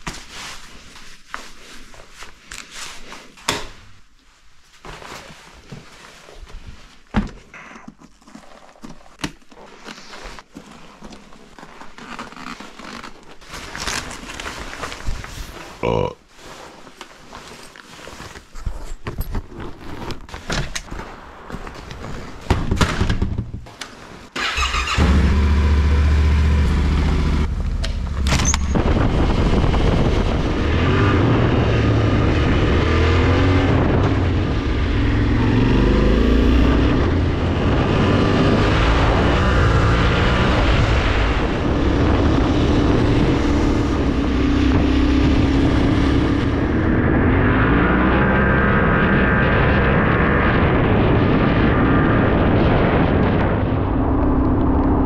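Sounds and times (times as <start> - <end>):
knocks and clatter: 22.4 - 23.8
motorcycle engine starting and running: 24.4 - 50.5
motorcycle accelerating: 24.4 - 55.0.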